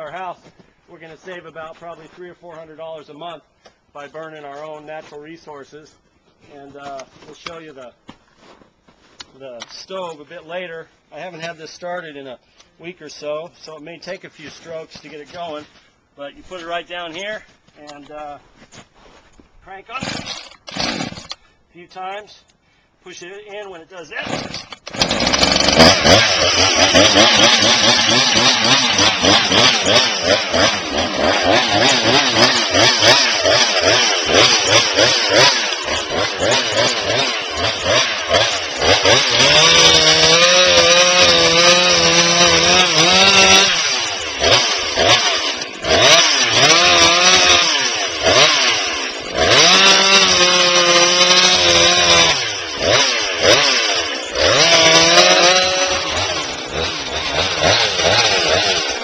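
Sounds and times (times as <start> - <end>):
chainsaw engine revving: 20.0 - 21.4, 24.2 - 59.0.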